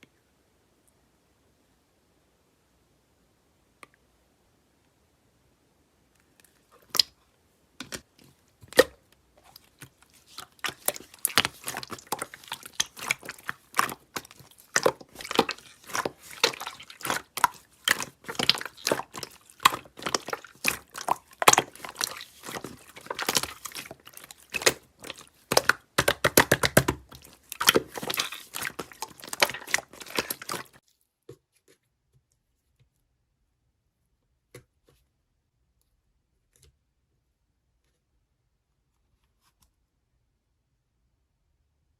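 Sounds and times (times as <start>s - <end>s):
slime squelching: 6.2s - 7.2s, 7.8s - 30.9s.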